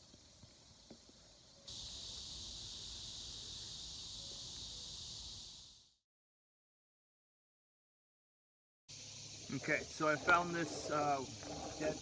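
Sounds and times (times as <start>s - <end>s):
insects chirping shrilly: 0.0s - 6.0s, 8.9s - 12.0s.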